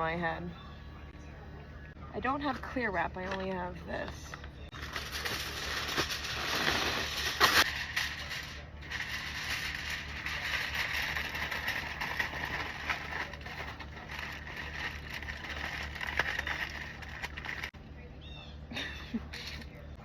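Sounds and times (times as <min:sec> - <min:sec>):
aluminum foil crinkling: 0:04.7 - 0:17.8.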